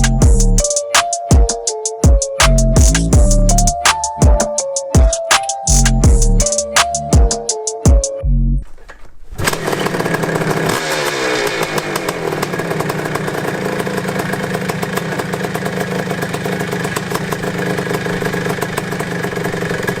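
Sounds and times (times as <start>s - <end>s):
dirt bike engine idling: 9.5s - 20.0s.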